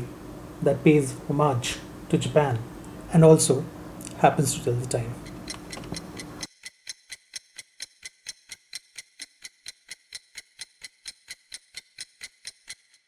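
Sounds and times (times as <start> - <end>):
clock ticking rapidly: 4.9 - 12.8.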